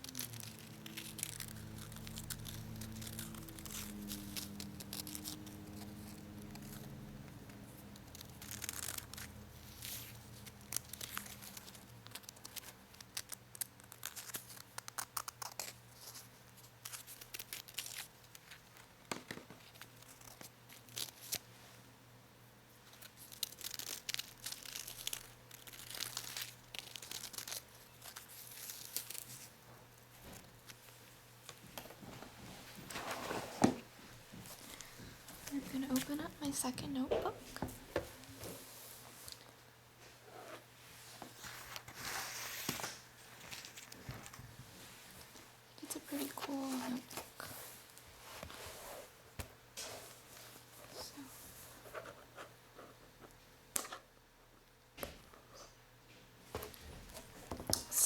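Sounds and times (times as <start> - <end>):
paper and plastic crinkling: 0.0 - 21.5, 22.8 - 29.6, 30.2 - 39.5, 41.0 - 48.6.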